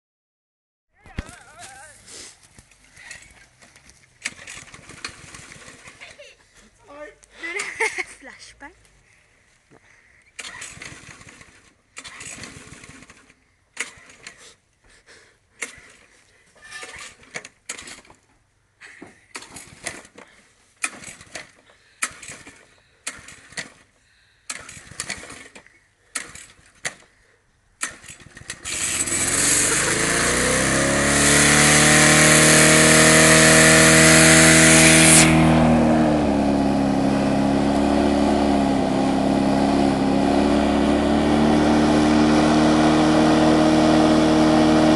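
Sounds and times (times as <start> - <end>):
lawn mower engine running: 1.2 - 6.1, 10.4 - 14.3, 27.8 - 44.9
starter cord pulls: 2.6 - 5.9, 10.4 - 14.5, 15.6 - 16.1, 16.7 - 18.2, 19.3 - 27.1, 27.8 - 32.5.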